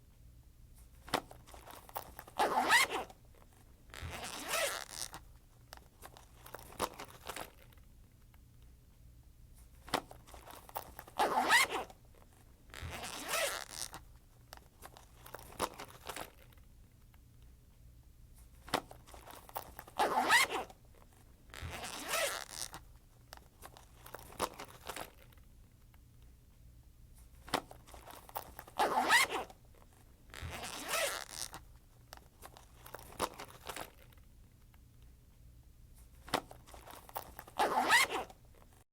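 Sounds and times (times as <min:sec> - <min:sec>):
backpack zipper rasping: 0:01.4 - 0:03.2, 0:03.9 - 0:05.2, 0:10.3 - 0:12.0, 0:12.7 - 0:14.0, 0:19.0 - 0:20.8, 0:21.5 - 0:22.8, 0:27.6 - 0:29.6, 0:30.3 - 0:31.6, 0:36.4 - 0:38.5.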